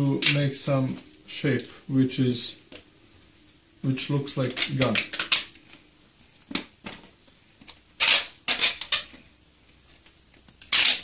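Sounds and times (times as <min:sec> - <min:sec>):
duct tape ripping off roll: 0:04.4 - 0:05.7, 0:08.0 - 0:09.2, 0:10.5 - 0:11.0.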